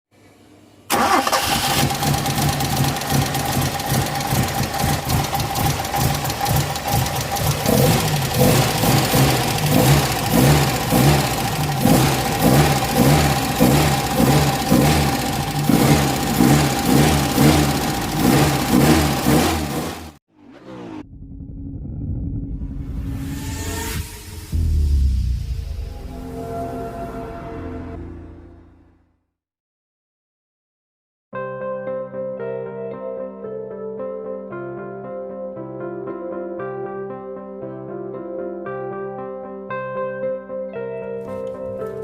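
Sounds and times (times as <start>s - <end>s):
car engine idling: 0.9s - 23.6s.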